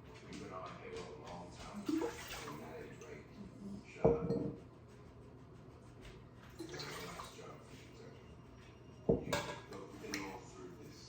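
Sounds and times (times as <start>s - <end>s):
water splashing and trickling: 1.8s - 3.2s, 6.6s - 7.6s.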